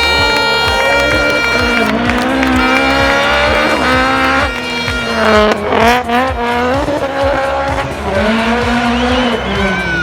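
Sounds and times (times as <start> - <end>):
rally car engine revving high: 0.0 - 10.0.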